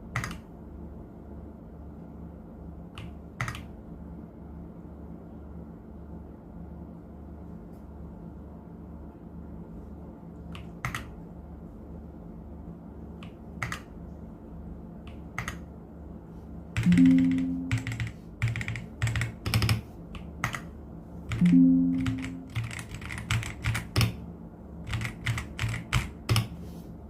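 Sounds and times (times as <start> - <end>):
mechanical keyboard typing: 0.2 - 0.4, 13.6 - 13.9, 16.8 - 20.7, 21.3 - 24.2, 24.9 - 26.5
soft background music: 16.8 - 18.0, 21.4 - 22.6.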